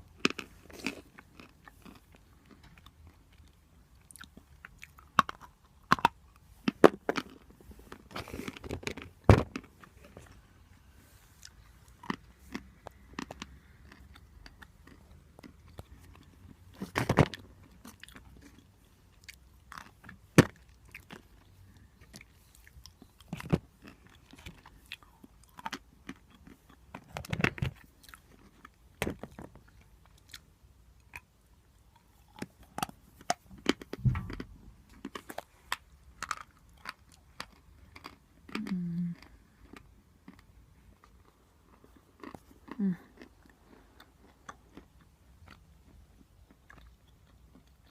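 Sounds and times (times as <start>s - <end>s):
person chewing chalk: 0.0s - 10.6s, 11.2s - 27.2s, 29.4s - 47.9s
brief low hum: 34.0s - 34.9s.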